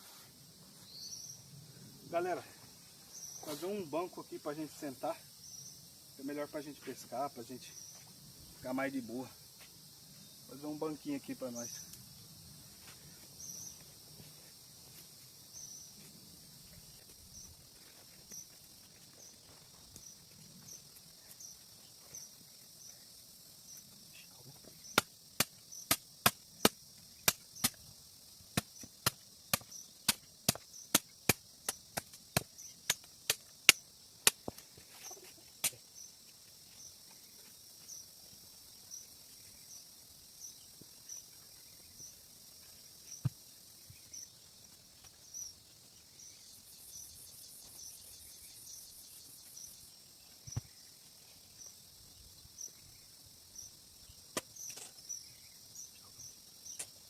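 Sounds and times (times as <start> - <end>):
insects chirping: 0.0 - 57.0
fast insect buzz: 11.5 - 57.0.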